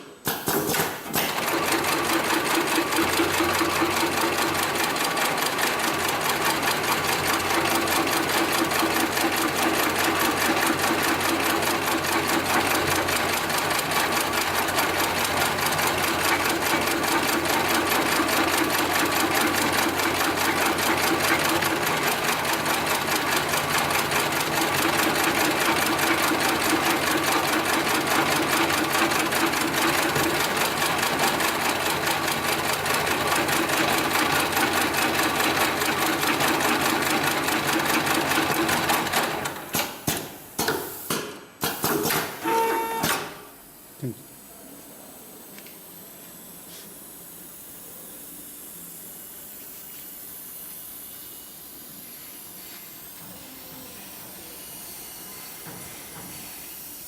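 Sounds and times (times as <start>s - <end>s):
sewing machine needle clatter: 0.3s - 40.0s
sewing machine motor hum: 0.3s - 40.1s, 42.3s - 44.1s.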